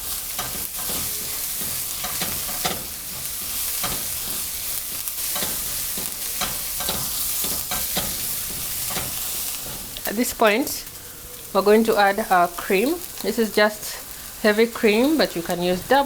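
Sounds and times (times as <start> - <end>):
utensil scraping pan: 0.0 - 10.0
onions sizzling in frying pan: 0.0 - 16.0.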